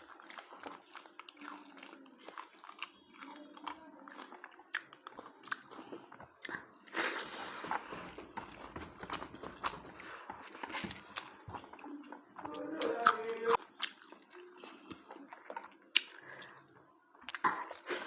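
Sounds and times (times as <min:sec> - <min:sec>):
wet chewing and biting: 0:00.0 - 0:18.0.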